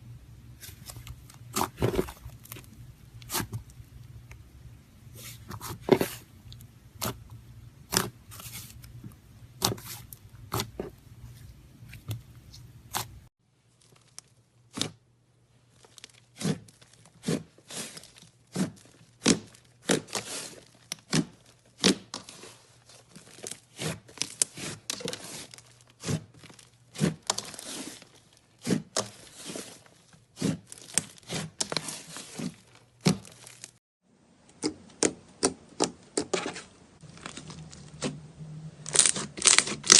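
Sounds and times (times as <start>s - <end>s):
slime popping and crackling: 38.9s - 39.9s.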